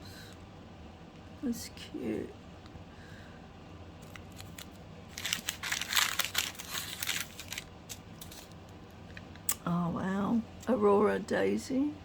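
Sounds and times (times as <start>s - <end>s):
packaging crinkling: 4.0s - 8.6s.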